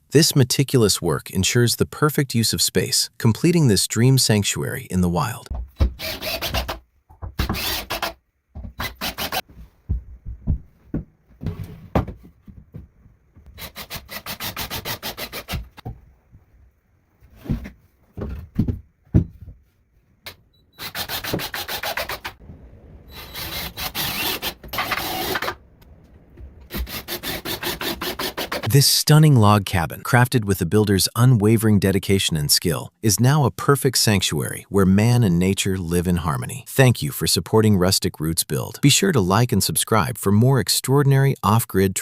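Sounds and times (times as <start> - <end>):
hand tool rasping wood: 13.5 - 15.8, 20.8 - 22.4, 23.2 - 25.6, 26.7 - 28.7.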